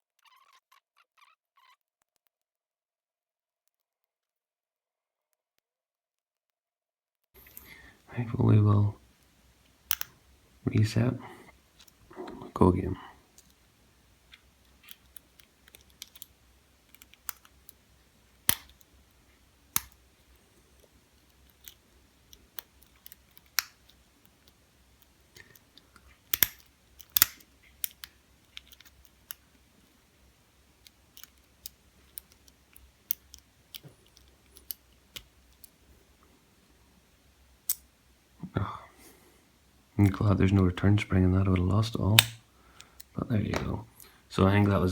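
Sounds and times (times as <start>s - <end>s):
lock pick clicking in padlock: 26.3s - 29.4s, 42.2s - 42.4s.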